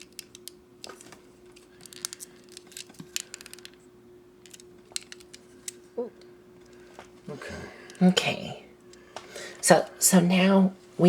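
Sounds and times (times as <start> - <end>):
plastic model parts clicking: 0.0 - 3.8, 4.4 - 5.8
faint steady hum: 0.0 - 11.0.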